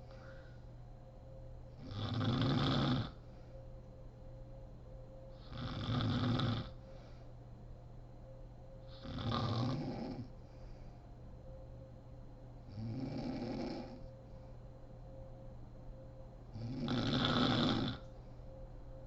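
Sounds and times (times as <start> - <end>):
woman snoring: 1.8 - 3.2, 5.4 - 6.8, 8.9 - 10.3, 12.7 - 14.1, 16.6 - 18.1.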